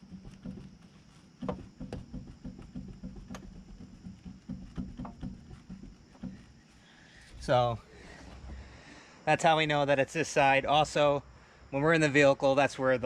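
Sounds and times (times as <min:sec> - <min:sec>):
wheel hub knocking: 0:00.0 - 0:07.5.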